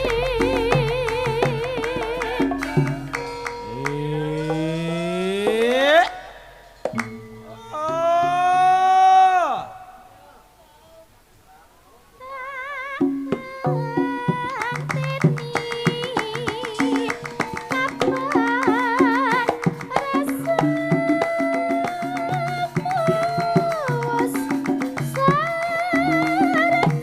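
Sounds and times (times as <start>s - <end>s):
hand drums: 0.0s - 8.9s, 13.0s - 27.0s
struck percussion: 0.0s - 9.0s, 13.0s - 27.0s
wavering melodic line: 6.7s - 8.7s.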